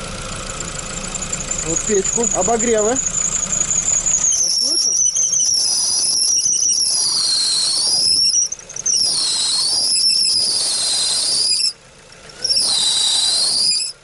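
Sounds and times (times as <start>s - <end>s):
alternator belt squealing: 0.0s - 14.0s.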